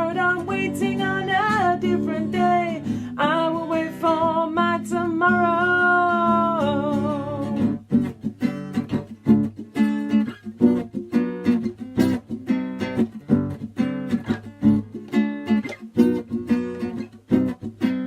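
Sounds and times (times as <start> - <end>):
guitar strumming: 0.0 - 18.0.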